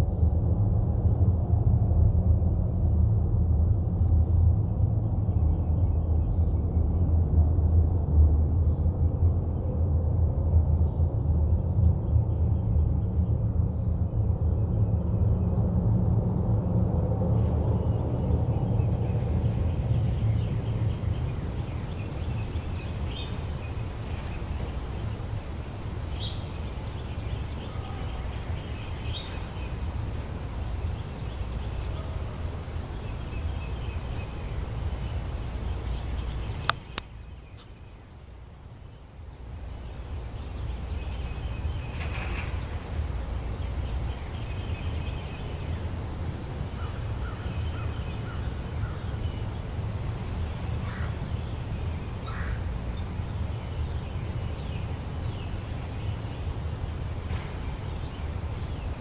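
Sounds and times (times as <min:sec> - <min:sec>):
birds chirping: 0:17.8 - 0:38.1
sharp clicks: 0:36.3 - 0:37.1.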